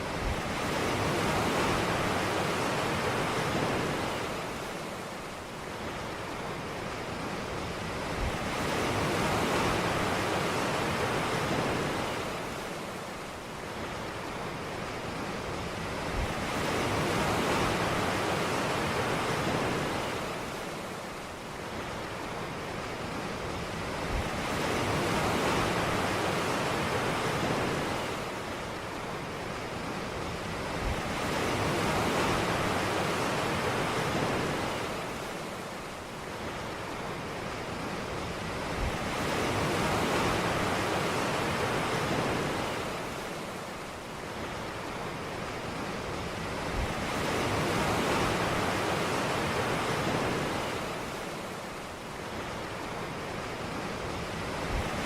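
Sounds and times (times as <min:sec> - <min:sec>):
ocean surf washing onto beach: 0:00.0 - 0:55.0.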